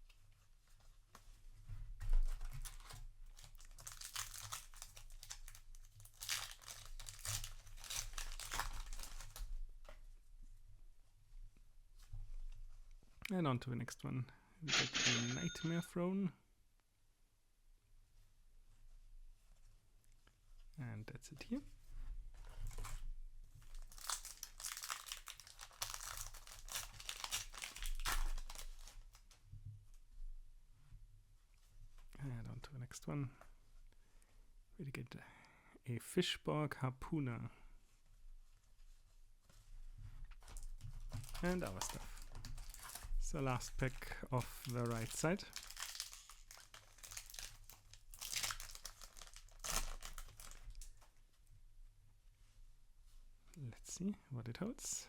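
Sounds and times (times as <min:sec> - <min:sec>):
foil wrapper crinkling and tearing: 0:02.4 - 0:09.5, 0:23.7 - 0:29.4, 0:40.5 - 0:51.1.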